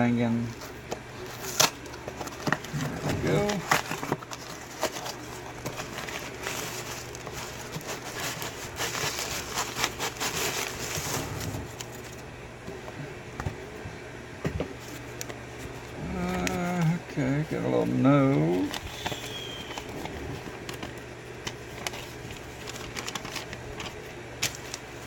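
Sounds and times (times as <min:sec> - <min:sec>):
packing material rustling: 0:00.4 - 0:12.3, 0:17.8 - 0:25.0.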